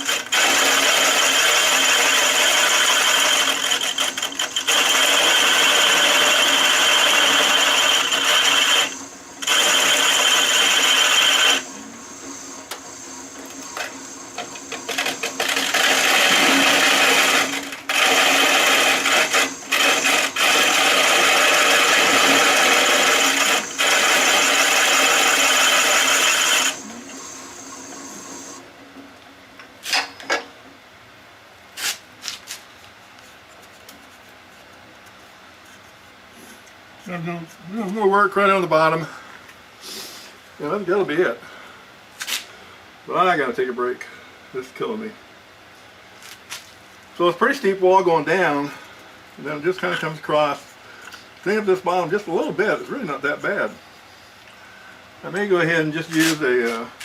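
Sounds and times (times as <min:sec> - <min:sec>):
tool shearing wood on lathe: 0:00.0 - 0:11.6, 0:14.9 - 0:26.9
lathe running: 0:00.0 - 0:28.6.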